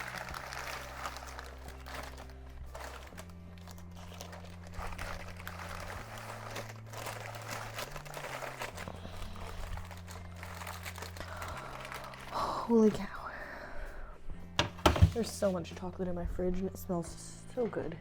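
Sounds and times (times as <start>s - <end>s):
paper crinkling and rustling: 0.0s - 13.1s, 14.6s - 15.6s.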